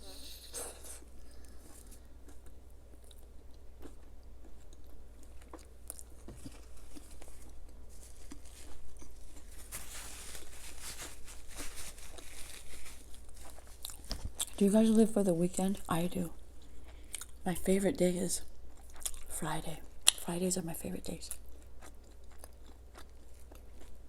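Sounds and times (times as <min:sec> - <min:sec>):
crisp food crunching: 0:01.4 - 0:15.1, 0:18.4 - 0:19.4, 0:21.2 - 0:24.0.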